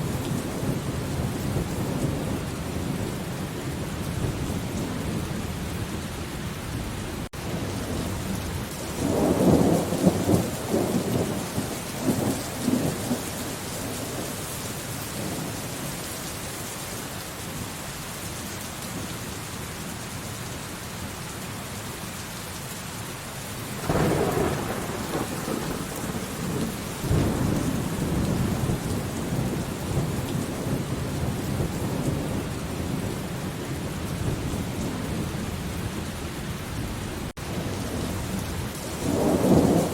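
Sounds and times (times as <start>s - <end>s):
steady rain: 0.0s - 39.9s
thunder rolling: 23.8s - 36.0s.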